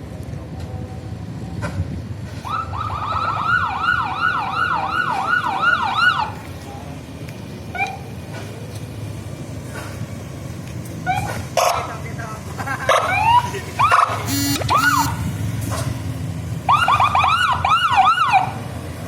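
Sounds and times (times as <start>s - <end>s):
warbling bus air horn: 14.2s - 15.2s.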